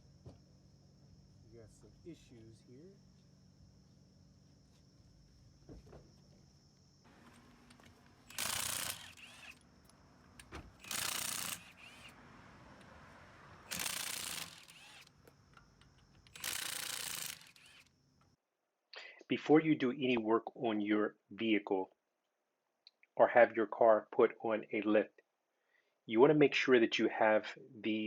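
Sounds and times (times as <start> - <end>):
impact wrench bursts: 7.2 - 9.6, 10.4 - 12.2, 13.6 - 15.2, 16.2 - 18.0.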